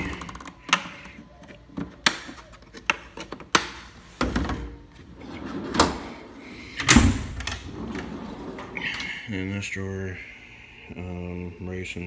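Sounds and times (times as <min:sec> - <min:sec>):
steel drawer sliding and thudding: 0:04.2 - 0:08.8.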